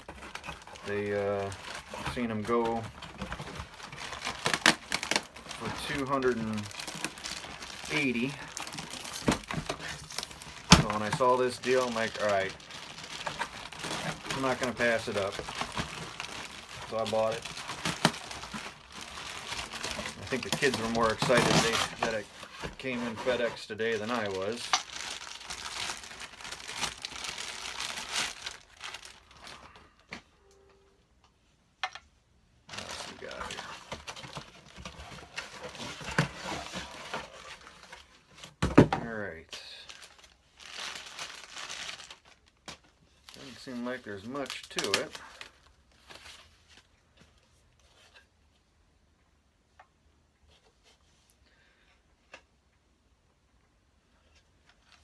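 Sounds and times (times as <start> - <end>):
plastic packaging crinkling: 0.0 - 30.0, 32.7 - 38.2, 39.8 - 46.9.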